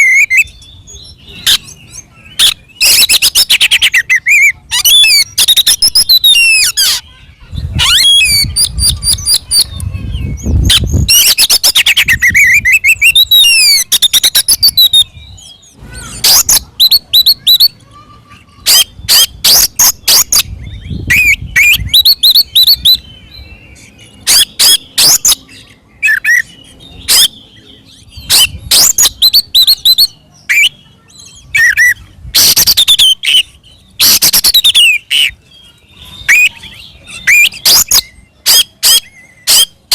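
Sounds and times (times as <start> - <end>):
bird singing whistles and trills: 0.0 - 39.9
bird harsh rattling chatter: 1.1 - 39.9.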